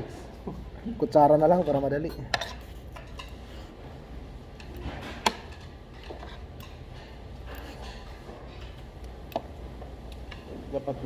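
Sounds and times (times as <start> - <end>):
utensils clinking against dishes: 1.4 - 3.8, 4.5 - 8.9.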